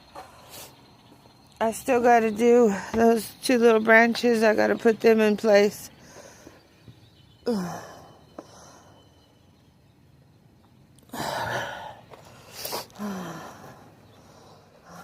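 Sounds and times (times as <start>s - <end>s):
woman sighing: 7.4s - 8.6s, 13.0s - 13.8s.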